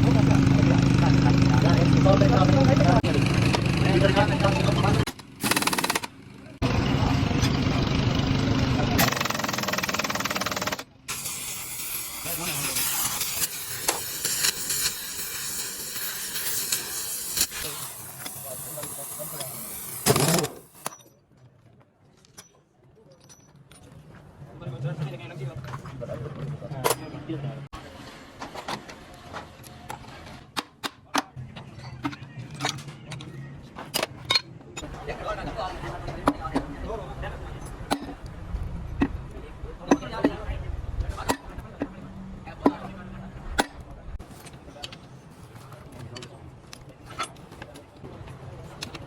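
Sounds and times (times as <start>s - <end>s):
metal tools clicking and knocking: 33.9s - 34.9s.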